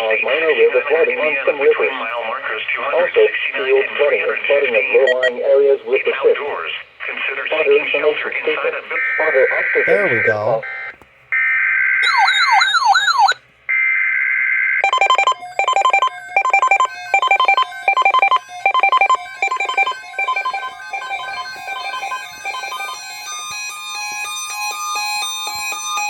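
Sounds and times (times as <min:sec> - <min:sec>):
changing beeps: 0:05.0 - 0:05.4, 0:14.8 - 0:26.0
pulsing electronic alert tone: 0:14.8 - 0:26.0.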